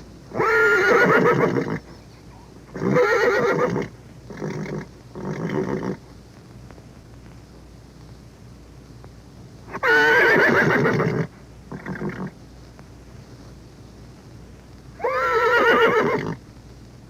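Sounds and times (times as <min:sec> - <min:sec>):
horse neighing: 0:00.3 - 0:01.9, 0:02.7 - 0:06.0, 0:09.7 - 0:12.3, 0:15.0 - 0:16.4.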